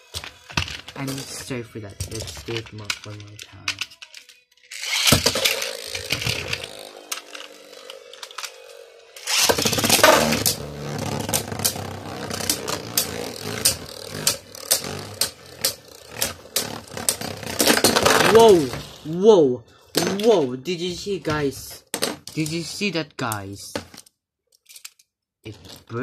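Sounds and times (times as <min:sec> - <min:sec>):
spinning tops scraping plastic: 0:00.0 - 0:19.2
top launch: 0:09.3 - 0:19.0.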